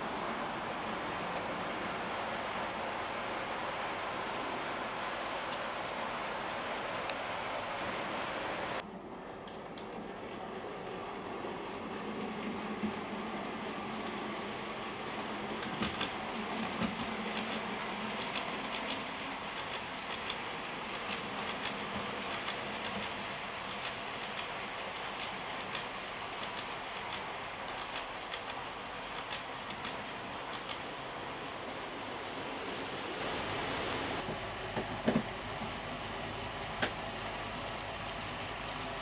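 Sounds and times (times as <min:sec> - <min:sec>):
low train hum: 0:00.0 - 0:39.0
model train rattling on track: 0:09.4 - 0:31.8
wheels clicking over rail joints: 0:12.0 - 0:30.9.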